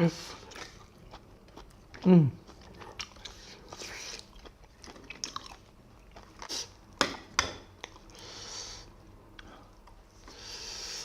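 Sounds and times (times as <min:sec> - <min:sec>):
wet chewing and lip-smacking: 0:00.4 - 0:08.2.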